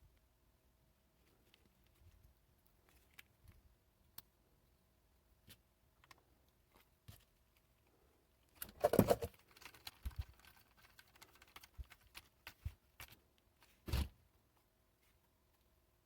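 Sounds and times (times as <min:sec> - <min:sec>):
plastic parts clicking and rattling: 0:08.5 - 0:13.8.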